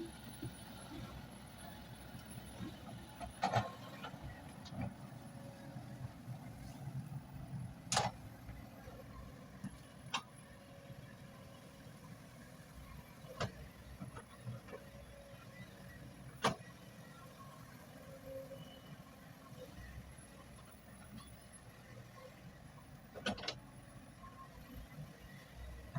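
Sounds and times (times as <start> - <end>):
excavator diesel engine rumbling: 0.0 - 20.7.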